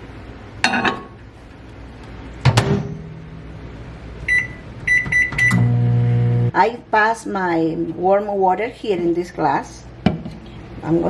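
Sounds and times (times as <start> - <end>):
microwave oven humming: 0.0 - 7.8
keypad beeps: 4.3 - 5.6.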